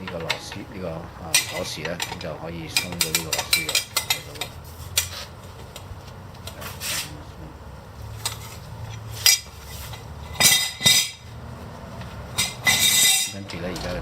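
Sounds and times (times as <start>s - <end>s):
steady low hum: 0.0s - 14.0s
wrench clinking on lug nut: 1.3s - 5.1s, 12.4s - 13.9s.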